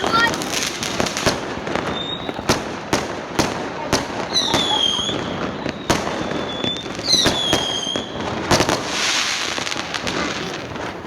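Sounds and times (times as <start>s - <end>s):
crackling firework burst: 0.0s - 11.0s
fireworks bangs: 0.0s - 11.0s
whistling rocket: 1.8s - 2.6s, 4.3s - 9.5s.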